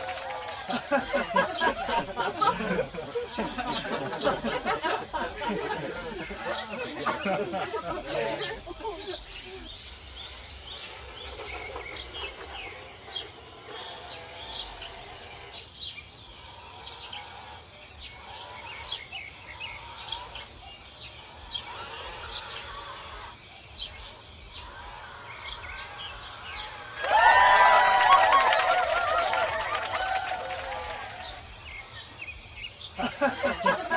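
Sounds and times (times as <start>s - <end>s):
small birds chirping: 0.0s - 27.0s, 30.6s - 33.9s.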